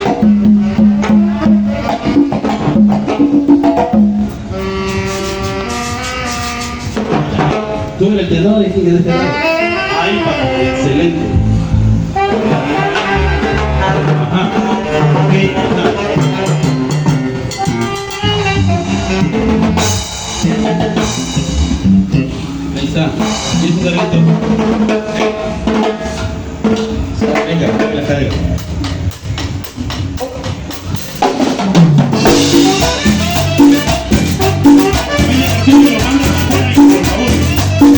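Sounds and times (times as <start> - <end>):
drum kit: 0.0 - 8.2, 10.3 - 37.9
held wind instrument notes: 0.0 - 23.9, 32.2 - 37.9
latin dance band playing: 0.0 - 37.9.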